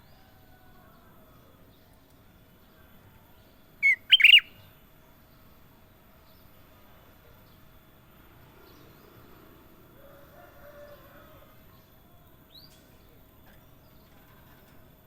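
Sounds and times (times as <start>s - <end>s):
soft bird chirps: 3.8s - 4.7s.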